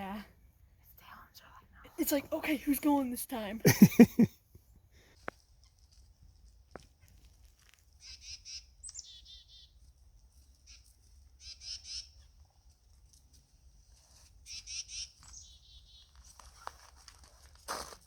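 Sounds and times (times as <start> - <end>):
chickadee calling: 8.0 - 9.7, 10.7 - 12.3, 14.5 - 16.2.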